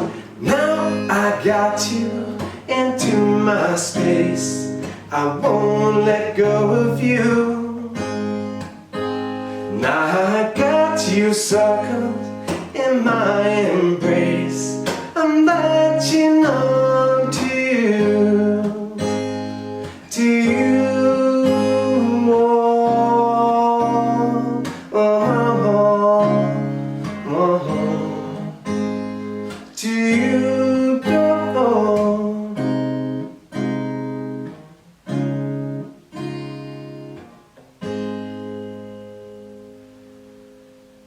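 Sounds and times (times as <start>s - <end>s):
person singing wordlessly: 0.0s - 8.2s, 9.7s - 28.8s, 29.5s - 32.8s
acoustic guitar strumming: 0.0s - 41.0s.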